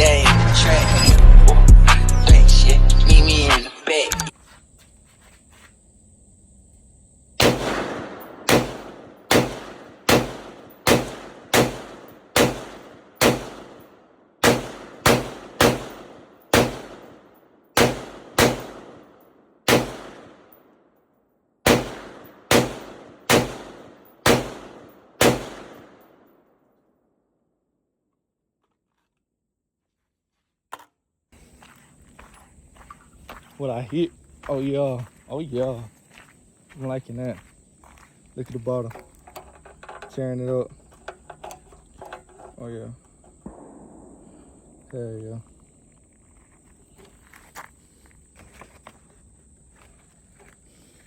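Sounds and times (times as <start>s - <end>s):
rifle shots with echo: 7.4s - 20.8s, 21.6s - 26.6s, 43.4s - 45.6s.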